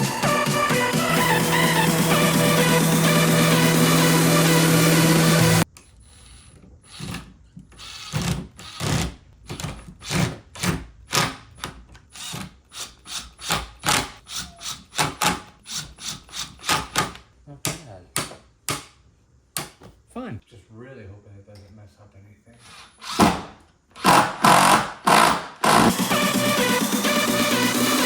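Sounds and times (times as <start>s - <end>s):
music: 0.0s - 5.6s, 25.8s - 28.0s.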